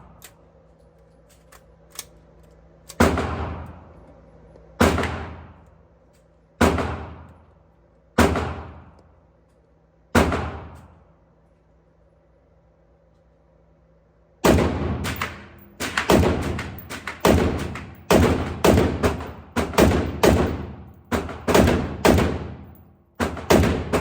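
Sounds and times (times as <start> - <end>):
rifle shots echoing: 14.4 - 24.0.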